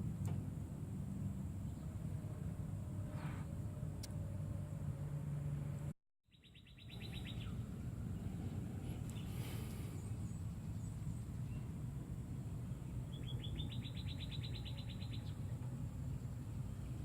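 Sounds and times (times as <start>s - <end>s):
songbird trilling: 6.3s - 7.7s, 13.0s - 15.6s
faint bird chirps: 6.3s - 11.8s, 12.7s - 16.4s
steady low rumble: 6.8s - 17.0s.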